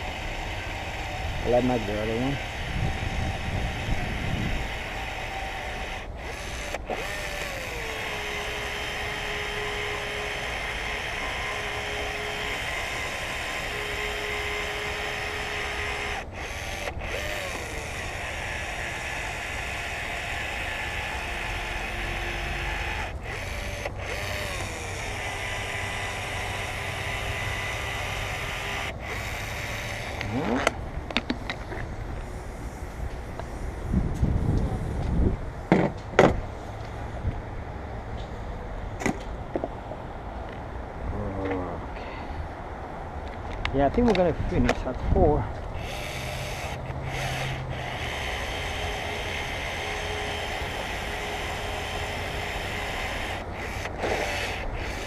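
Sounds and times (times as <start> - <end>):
caulking gun motor whine: 0.0 - 35.1, 44.0 - 55.0.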